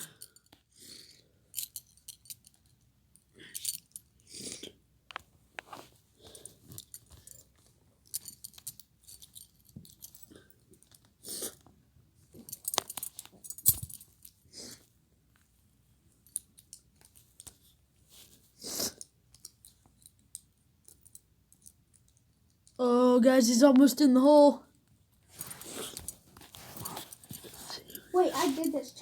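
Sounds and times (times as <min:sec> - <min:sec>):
handcuffs and chain clinking: 0:00.0 - 0:04.3, 0:05.8 - 0:11.6, 0:12.3 - 0:14.4, 0:16.2 - 0:17.8, 0:19.0 - 0:22.8, 0:25.3 - 0:29.0
handcuff key clicks: 0:03.4 - 0:04.1.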